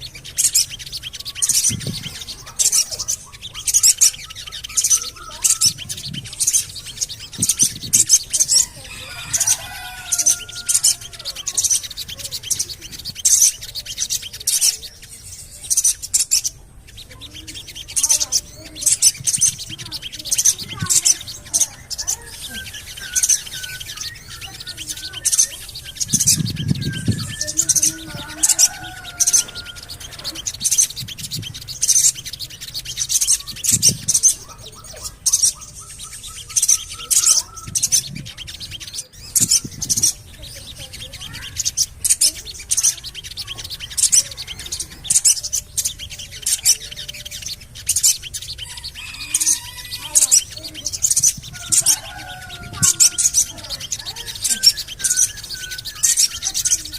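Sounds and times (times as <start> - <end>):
bird chirping: 0.0 - 56.9.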